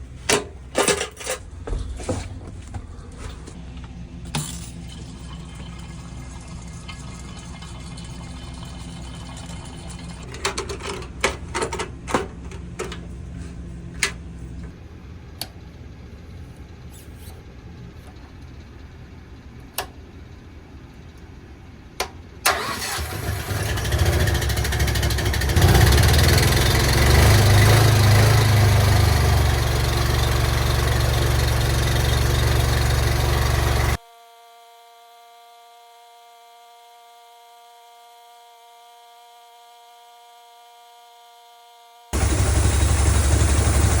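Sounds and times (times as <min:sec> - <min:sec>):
faint steady hum: 0:00.0 - 0:22.5
engine starting and running: 0:22.0 - 0:34.0, 0:42.2 - 0:44.0.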